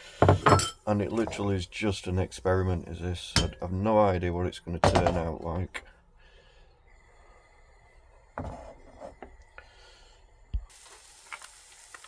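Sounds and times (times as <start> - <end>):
kitchen utensil knocks and clicks: 0.2 - 1.5, 3.3 - 3.7, 4.8 - 5.4
omelette sizzling in frying pan: 10.7 - 12.0.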